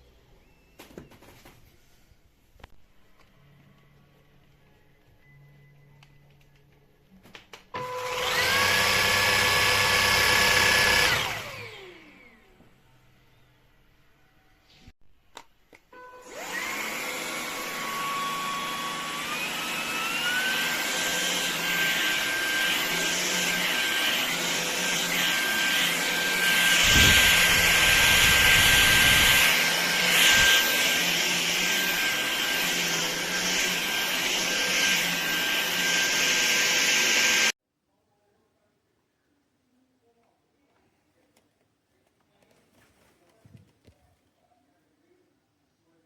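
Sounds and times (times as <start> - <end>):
stick vacuum whining: 7.7 - 12.7, 16.2 - 37.6.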